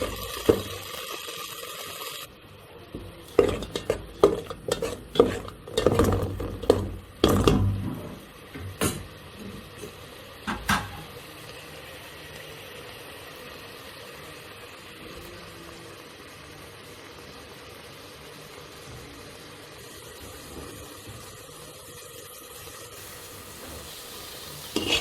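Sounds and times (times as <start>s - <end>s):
utensil clinking against pot: 3.3s - 7.6s.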